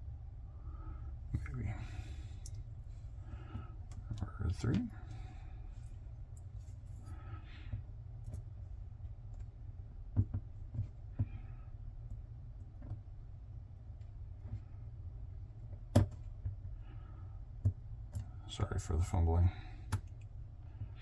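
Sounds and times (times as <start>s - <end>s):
low steady hum: 0.0s - 21.0s
small metallic clicks and taps: 19.9s - 20.3s.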